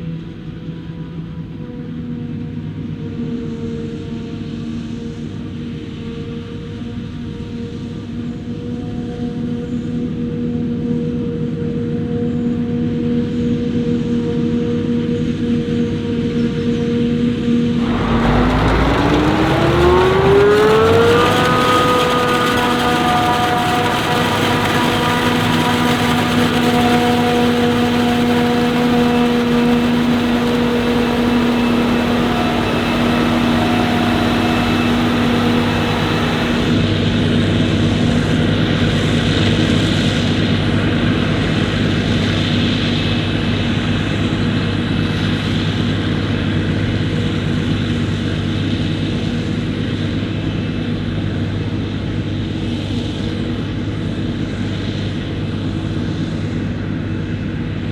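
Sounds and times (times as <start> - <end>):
heavy machinery engines running: 17.8 - 36.8.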